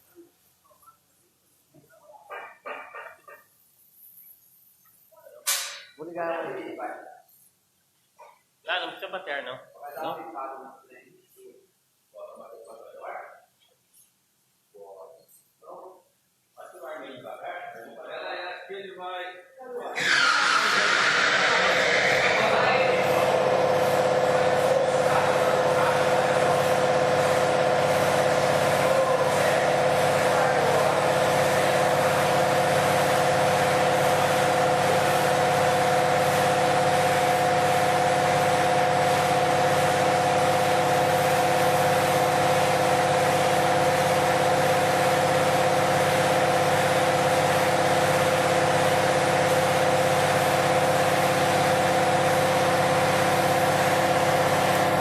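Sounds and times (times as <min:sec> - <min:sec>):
router whine: 0:20.0 - 0:32.5.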